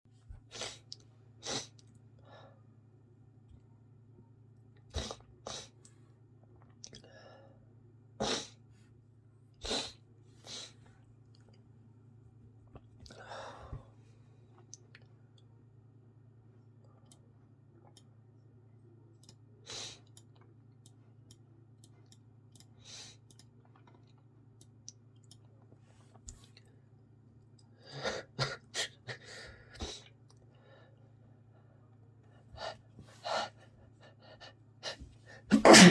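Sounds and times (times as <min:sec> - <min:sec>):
person sneezing: 0:35.5 - 0:35.9.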